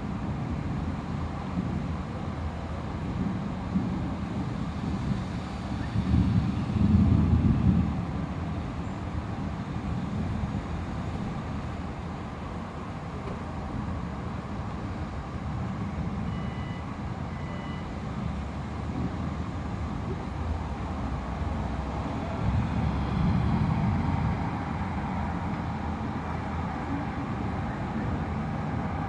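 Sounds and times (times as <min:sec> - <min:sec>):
city background noise: 0:00.0 - 0:29.0
faint short beeps: 0:16.2 - 0:18.0.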